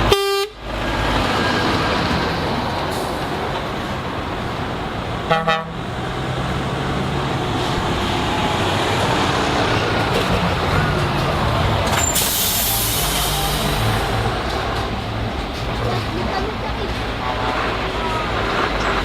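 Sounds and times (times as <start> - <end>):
truck horn blast: 0.0 - 0.6, 5.2 - 5.9
truck diesel engines running: 0.0 - 19.0
air brakes hissing: 11.9 - 14.6.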